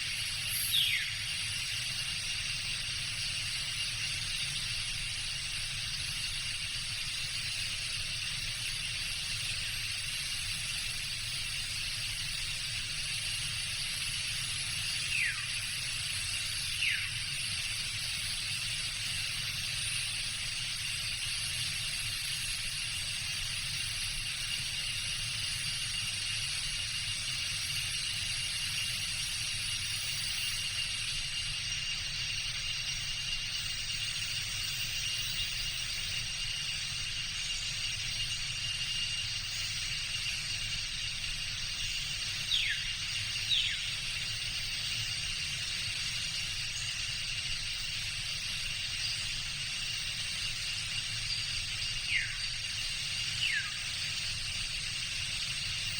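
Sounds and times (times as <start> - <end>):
insects buzzing chorus: 0.0 - 55.9
falling whistled calls: 0.5 - 1.3, 15.0 - 15.6, 16.7 - 17.2, 41.8 - 44.0, 52.0 - 54.2.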